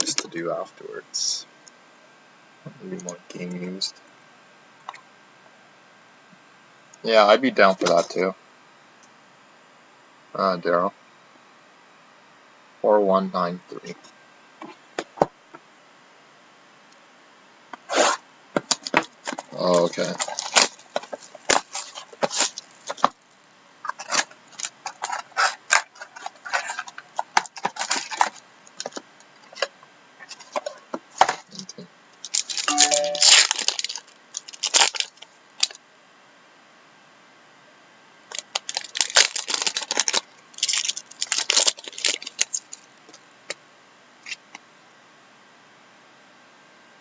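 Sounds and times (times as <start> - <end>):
foil wrappers and cards rustling: 17.9 - 31.6, 32.2 - 35.8, 38.3 - 43.2.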